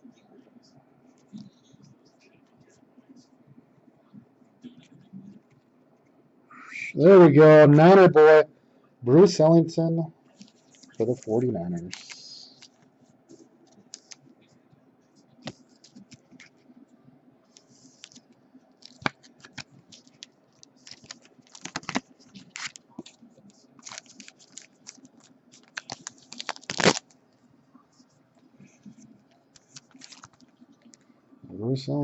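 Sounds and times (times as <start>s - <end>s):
cards clicking and scratching: 10.4s - 14.2s, 15.4s - 16.6s, 17.5s - 27.2s, 29.4s - 31.0s.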